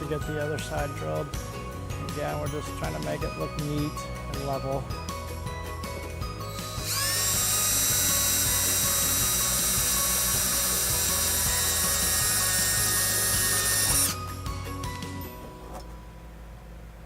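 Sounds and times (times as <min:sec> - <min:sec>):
electric drill whining: 0:06.1 - 0:14.5.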